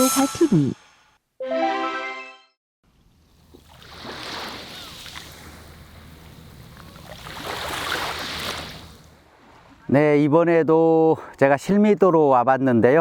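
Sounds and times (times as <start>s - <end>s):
surf hissing on shore: 3.7s - 9.1s.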